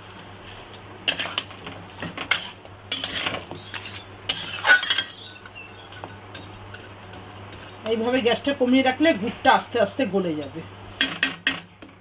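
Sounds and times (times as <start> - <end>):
utensil clinking and scraping in pan: 0.0 - 11.6.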